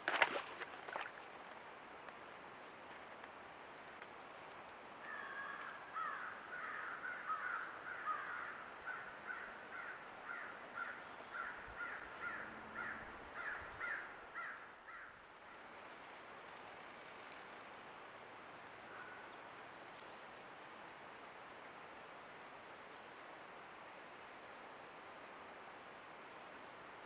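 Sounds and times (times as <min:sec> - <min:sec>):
steady background hiss: 0:00.0 - 0:27.0.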